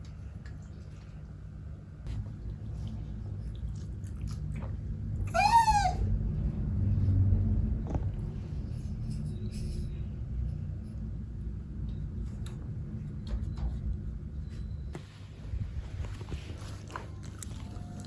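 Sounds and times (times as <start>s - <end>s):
kitten meowing: 5.3s - 6.1s
steady low hum: 6.0s - 18.0s.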